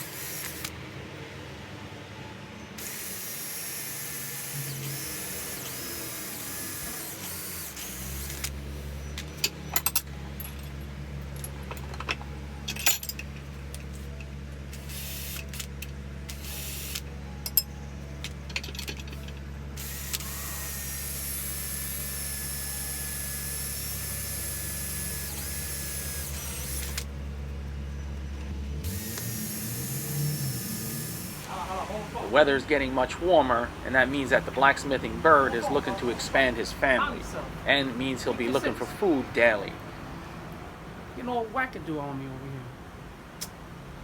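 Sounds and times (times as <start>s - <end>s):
metallic clinks of steel pieces: 17.4s - 19.4s.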